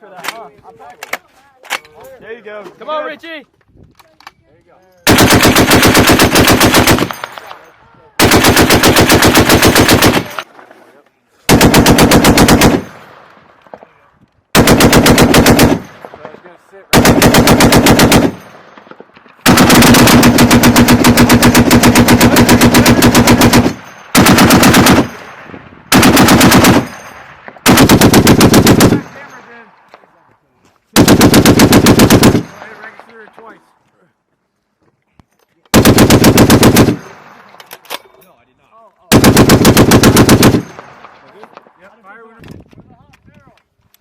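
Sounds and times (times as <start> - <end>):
machine gun automatic fire: 5.0 - 7.6, 8.2 - 10.5, 11.5 - 13.1, 14.6 - 16.2, 16.9 - 29.4, 31.0 - 32.9, 35.7 - 37.6, 39.1 - 41.7.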